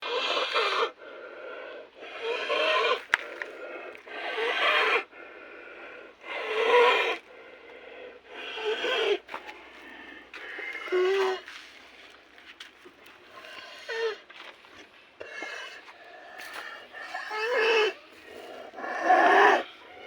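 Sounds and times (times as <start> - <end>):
quiet cattle breathing: 0.9 - 2.4, 3.0 - 20.0
cattle snoring through the nose: 13.3 - 20.0.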